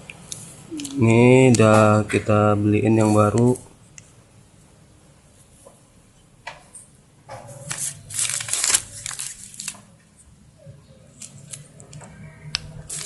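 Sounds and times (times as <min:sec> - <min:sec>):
plastic packaging crinkling and tearing: 0:07.6 - 0:10.0, 0:12.8 - 0:13.0.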